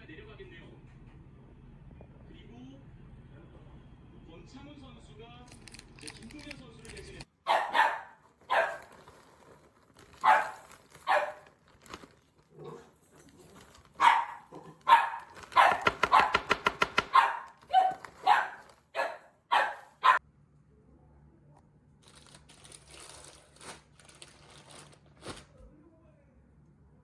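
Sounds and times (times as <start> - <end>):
small dog barking: 7.4 - 8.9, 10.2 - 11.5, 14.0 - 20.2.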